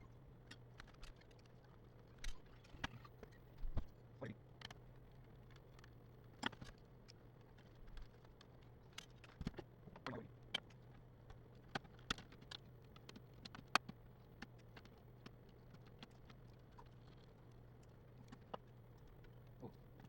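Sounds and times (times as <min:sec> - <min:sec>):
low steady hum: 0:00.0 - 0:20.0
small clicks and taps on laptop: 0:04.6 - 0:20.0.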